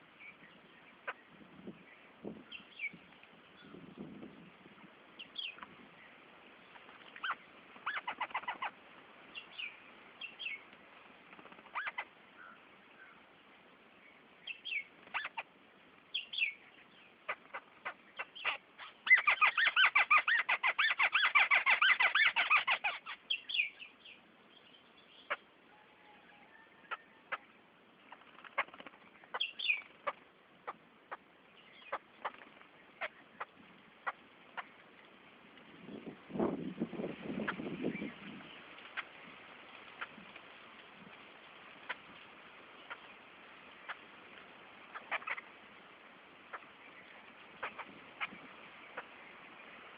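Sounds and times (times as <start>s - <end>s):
bird chirps: 5.2s - 10.7s, 11.4s - 13.2s, 14.0s - 15.5s, 16.1s - 35.2s, 44.8s - 45.5s, 46.4s - 49.9s.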